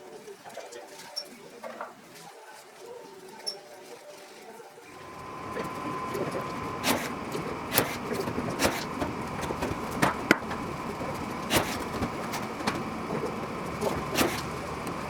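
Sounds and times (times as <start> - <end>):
background hum: 4.9 - 15.0.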